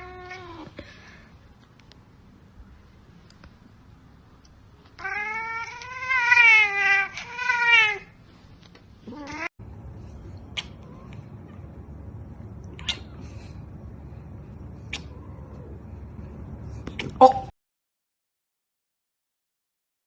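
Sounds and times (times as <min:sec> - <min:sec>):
cat yowling: 0:05.0 - 0:08.1.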